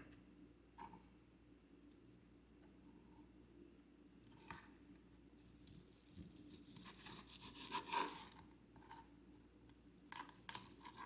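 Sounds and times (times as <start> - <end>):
knife scraping while cutting chicken: 5.6 - 8.4, 10.2 - 11.0.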